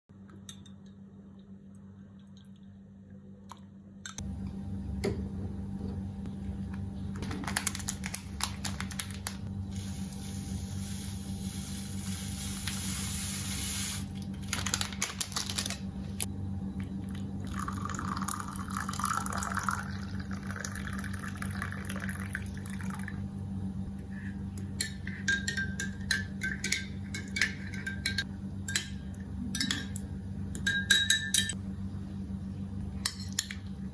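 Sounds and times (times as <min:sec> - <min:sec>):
steady low hum: 0:00.1 - 0:33.9
liquid poured into a glass: 0:17.1 - 0:23.1
spoon clinking against glass: 0:24.8 - 0:30.0, 0:30.6 - 0:31.6.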